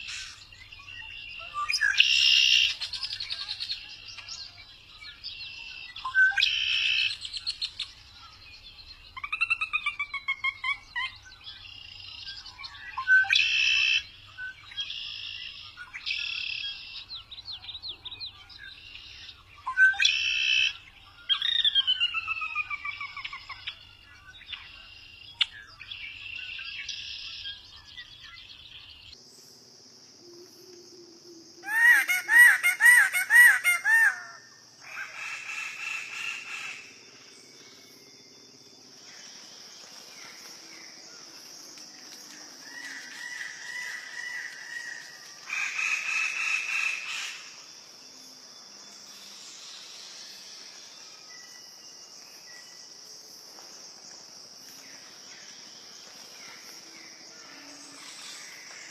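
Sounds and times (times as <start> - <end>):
birds calling: 31.6 - 47.7.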